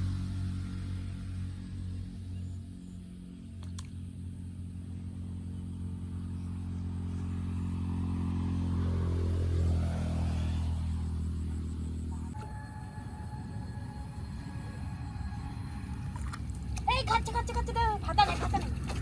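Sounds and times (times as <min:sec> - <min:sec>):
vehicle engine passing: 0:00.0 - 0:19.0.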